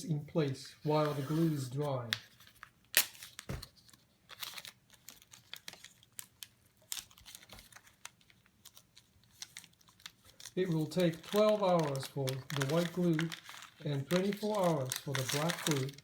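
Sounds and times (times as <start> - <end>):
tape tearing and crinkling: 2.4 - 16.0.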